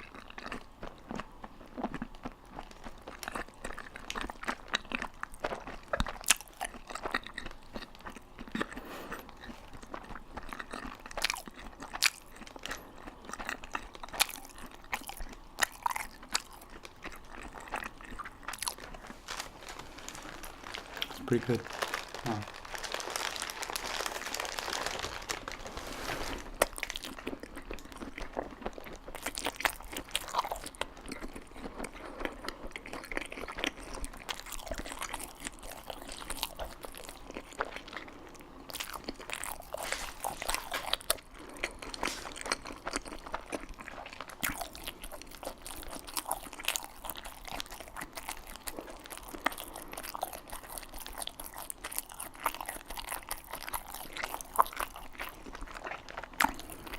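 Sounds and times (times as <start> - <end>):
biting and chewing food: 0.0 - 56.9
mouth sounds: 21.0 - 22.6.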